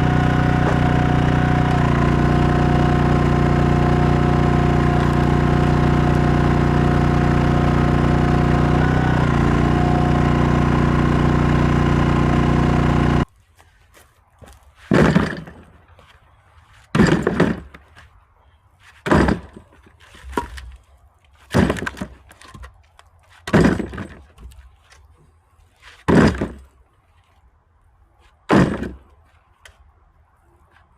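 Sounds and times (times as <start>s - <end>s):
axe splitting firewood: 0.0s - 13.3s, 14.4s - 16.1s, 16.7s - 18.2s, 18.8s - 27.3s, 28.3s - 29.8s
small engine running: 0.0s - 13.3s.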